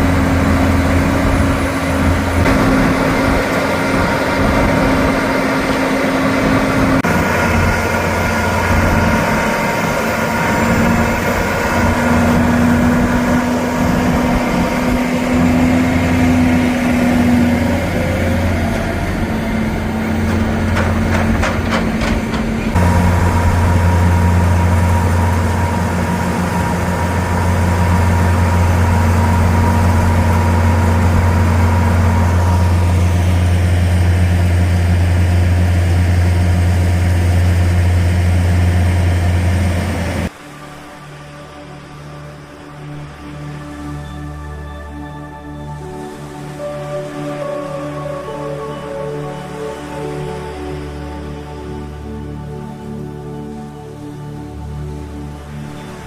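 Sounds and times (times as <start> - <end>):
farm machinery humming: 0.0 - 40.3.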